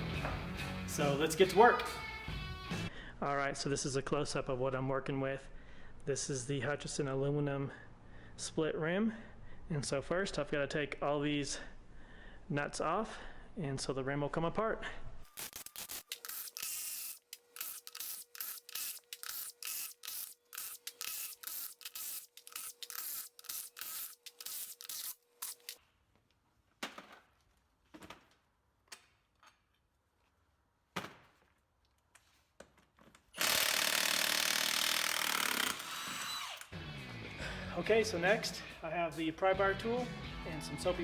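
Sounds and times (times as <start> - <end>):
power tool spinning off nuts: 15.3 - 25.8, 33.4 - 36.8.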